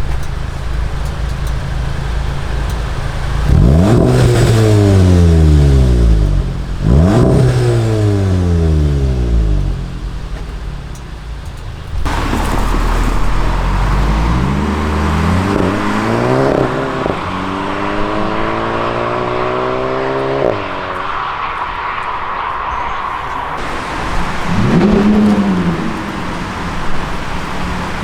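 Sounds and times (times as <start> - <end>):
car engine accelerating: 0.0 - 28.0
steady rush of noise: 12.8 - 28.0.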